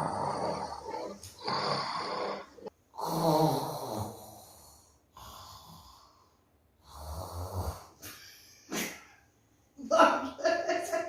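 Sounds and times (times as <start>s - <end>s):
woman snoring: 0.0s - 6.1s, 6.8s - 8.0s.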